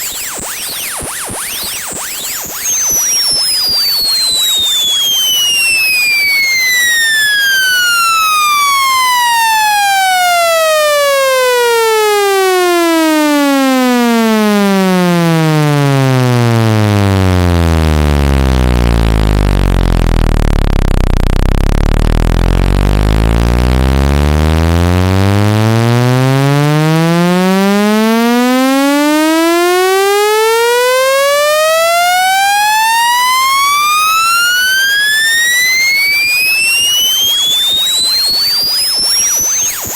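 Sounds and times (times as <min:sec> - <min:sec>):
buzzy electronic tone sweeping: 0:00.0 - 0:39.9.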